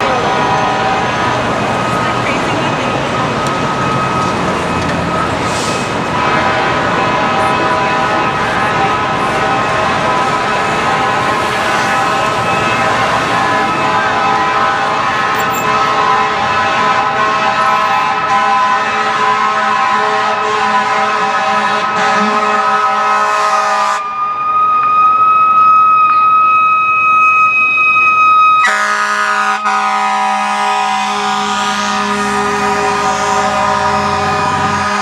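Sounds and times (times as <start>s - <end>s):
fire truck siren and air horns: 0.0s - 35.0s.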